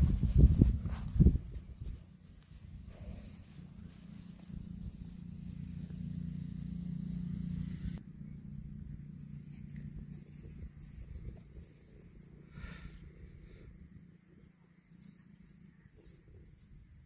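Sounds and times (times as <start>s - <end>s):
faint rustling: 0.0s - 7.3s.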